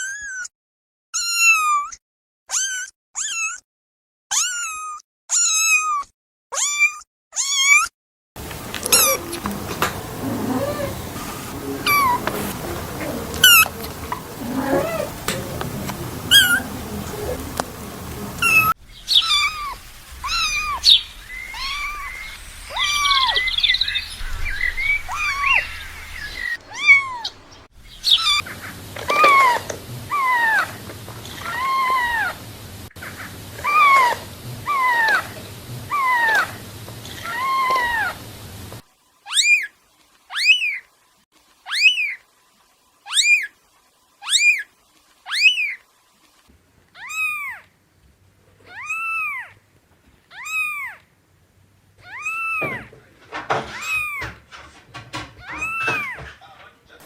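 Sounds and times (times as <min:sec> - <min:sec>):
kittens meowing: 0:08.4 - 0:27.4, 0:31.4 - 0:32.4, 0:33.6 - 0:36.6, 0:37.2 - 0:38.2, 0:47.0 - 0:47.6, 0:48.6 - 0:49.5, 0:50.3 - 0:51.0, 0:52.0 - 0:53.0, 0:55.4 - 0:56.3.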